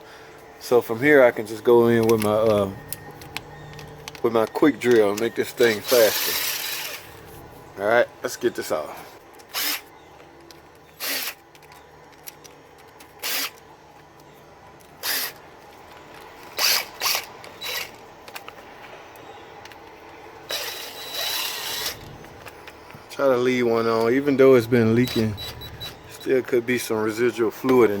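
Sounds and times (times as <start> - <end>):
cordless drill spinning bolts: 1.8 - 7.3, 9.4 - 13.6, 15.0 - 18.5, 20.5 - 22.9.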